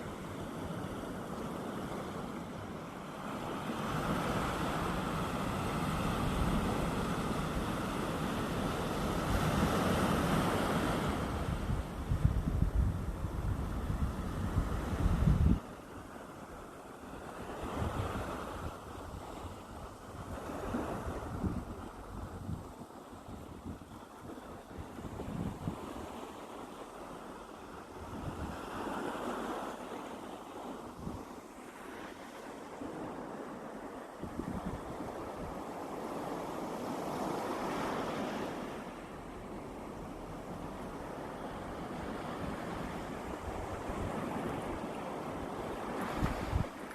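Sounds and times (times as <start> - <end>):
small waves washing onto beach: 0.0 - 46.9
wind buffeting microphone: 4.0 - 15.7, 17.6 - 26.2, 34.2 - 38.7, 40.4 - 46.9.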